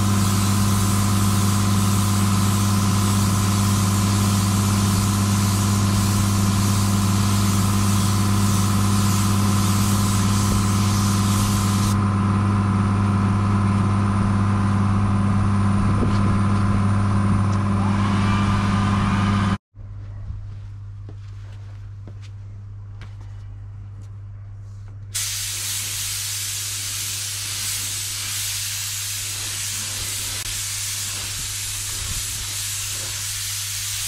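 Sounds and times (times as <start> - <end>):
spray gun air hiss: 0.0 - 12.0, 25.2 - 34.0.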